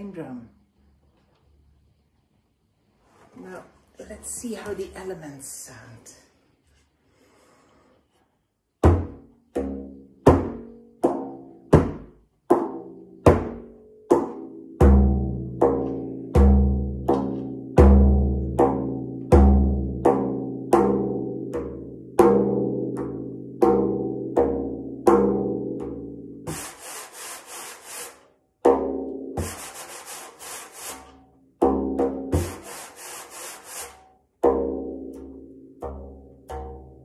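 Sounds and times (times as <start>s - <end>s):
rustling quick drum strokes: 26.5s - 28.2s, 29.4s - 31.1s, 32.4s - 34.0s.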